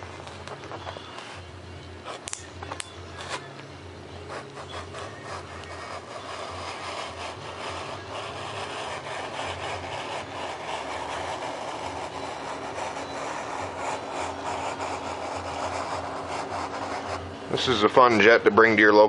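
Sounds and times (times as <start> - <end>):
knife cutting foam board: 4.4 - 17.2.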